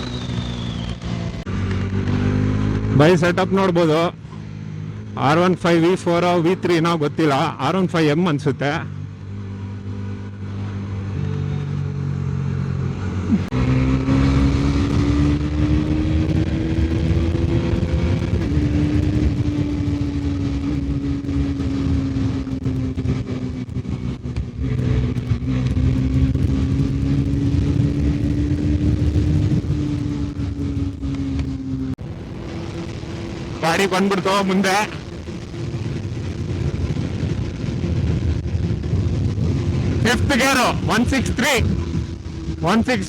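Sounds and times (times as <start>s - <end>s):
motorcycle engine revving hard: 0.0s - 43.0s.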